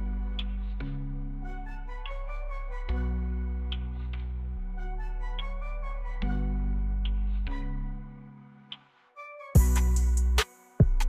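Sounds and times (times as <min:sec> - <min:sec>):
soft ambient music: 0:00.0 - 0:11.0.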